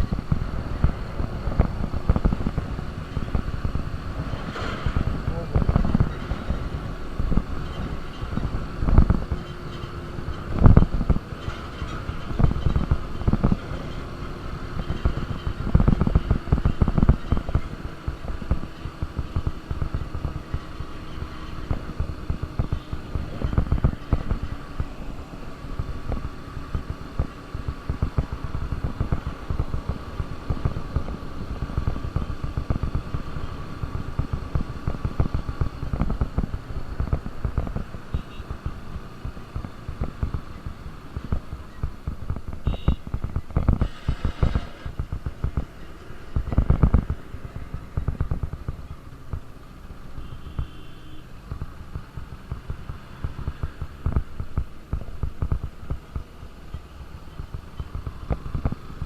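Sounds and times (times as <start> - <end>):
motorcycle engine running: 11.9 - 59.0.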